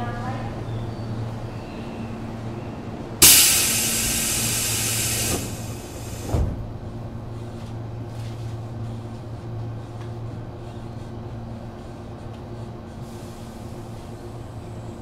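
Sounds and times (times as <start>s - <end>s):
train car low hum: 0.0s - 15.0s
compressed air hiss: 3.2s - 6.4s.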